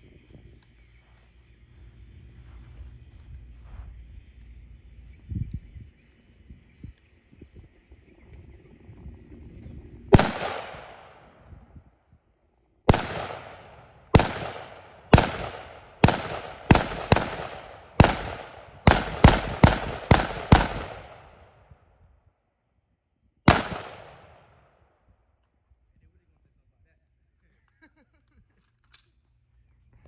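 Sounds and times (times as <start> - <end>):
gunshots: 10.1 - 11.3, 12.9 - 21.4, 23.5 - 24.5.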